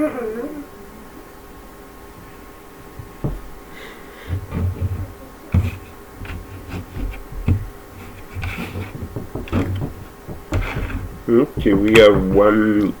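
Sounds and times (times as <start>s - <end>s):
soft rustling: 2.0s - 13.0s
puzzle pieces knocking and clicking: 6.3s - 13.0s.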